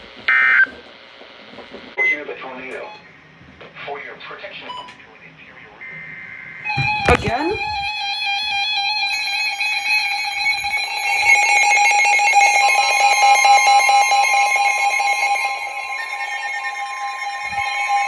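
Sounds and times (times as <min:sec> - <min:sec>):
steady electronic alert tones: 0:06.8 - 0:07.9, 0:10.8 - 0:18.0.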